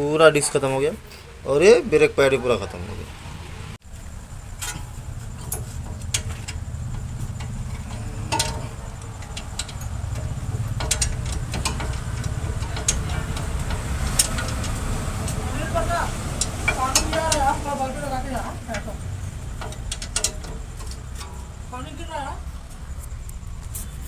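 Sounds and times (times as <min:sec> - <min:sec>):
low mechanical rumble: 0:00.0 - 0:24.0.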